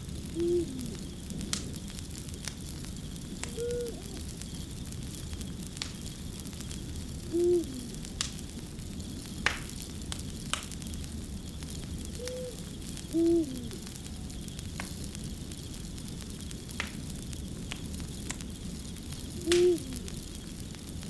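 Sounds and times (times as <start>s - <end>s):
wood fire crackling: 0.0s - 21.0s
low hoot-like calls: 0.2s - 1.2s, 3.4s - 4.4s, 7.2s - 8.4s, 12.0s - 14.4s, 19.3s - 20.3s.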